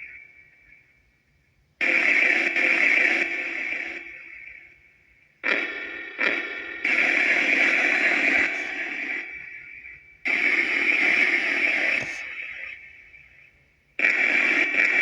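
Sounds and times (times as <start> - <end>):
echoing radio fragments: 5.4 - 15.0.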